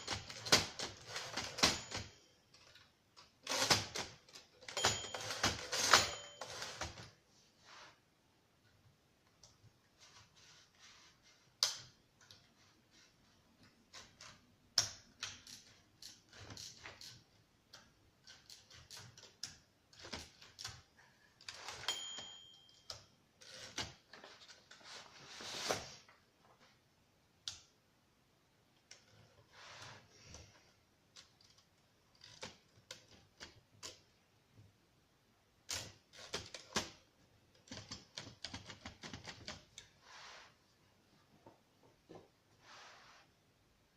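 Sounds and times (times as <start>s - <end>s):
typewriter bell ring: 0.0s - 2.7s, 3.4s - 7.1s, 21.5s - 23.8s
typewriter keystrokes clacking: 0.0s - 2.7s, 35.7s - 39.7s.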